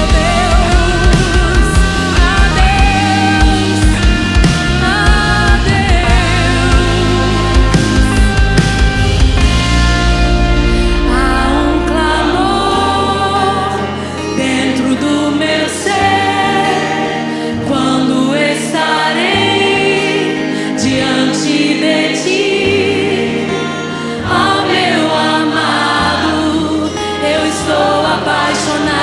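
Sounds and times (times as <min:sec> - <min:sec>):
held bass notes: 0:00.0 - 0:14.0
band playing worship music: 0:00.0 - 0:29.0
voices singing: 0:00.0 - 0:29.0.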